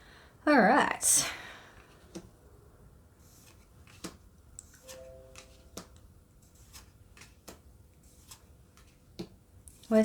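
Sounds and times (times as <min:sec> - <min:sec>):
faint tone: 0:04.8 - 0:05.7.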